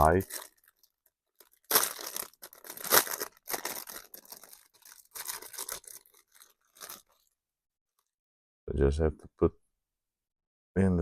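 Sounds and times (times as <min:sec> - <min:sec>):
plastic packaging tearing and crinkling: 0:00.0 - 0:07.3.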